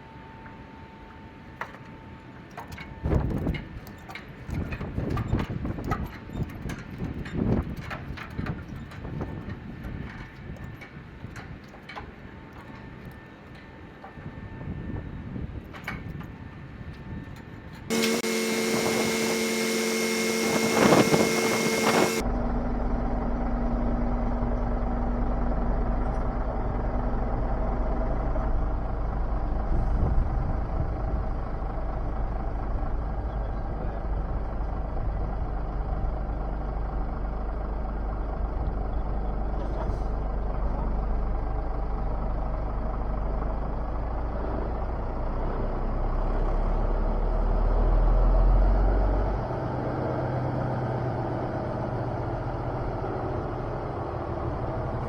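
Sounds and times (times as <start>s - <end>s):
diesel engine idling: 17.9s - 29.6s.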